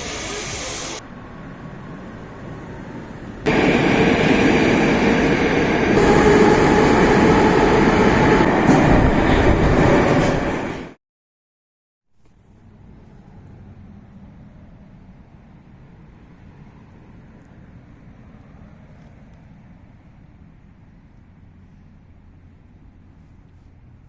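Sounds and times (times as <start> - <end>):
train wheels rumbling on rails: 0.0 - 11.0.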